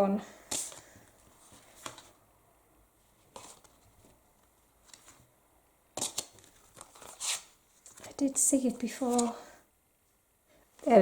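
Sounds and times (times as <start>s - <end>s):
cards sliding and flicking: 6.0s - 8.1s.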